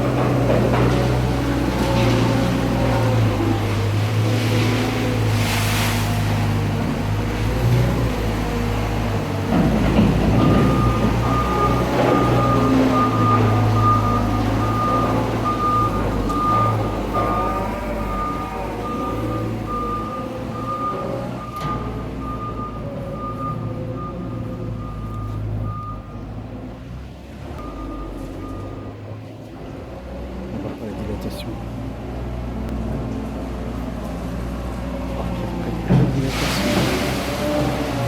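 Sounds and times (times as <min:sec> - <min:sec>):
diesel engine running: 0:00.0 - 0:38.0
reversing alarm beeping: 0:10.3 - 0:26.4, 0:27.6 - 0:29.2.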